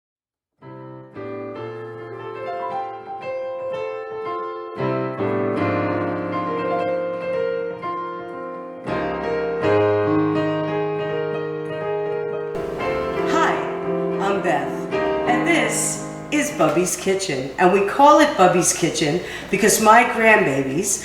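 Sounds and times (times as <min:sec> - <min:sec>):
piano melody over chords: 0:00.6 - 0:16.9.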